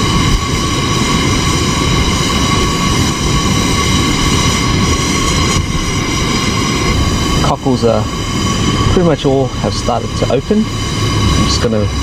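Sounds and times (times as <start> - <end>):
stove burner rushing: 0.0 - 12.0
thin steady whine: 0.0 - 12.0.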